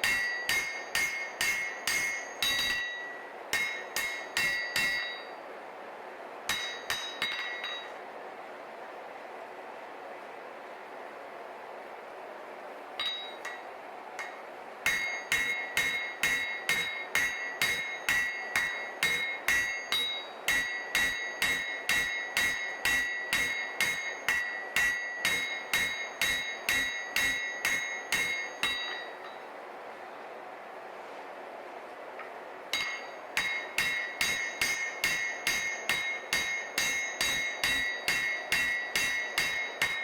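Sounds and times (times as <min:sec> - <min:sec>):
hammer blows on steel anvil: 0:00.0 - 0:05.4, 0:06.5 - 0:08.0, 0:13.0 - 0:29.5, 0:32.8 - 0:40.0.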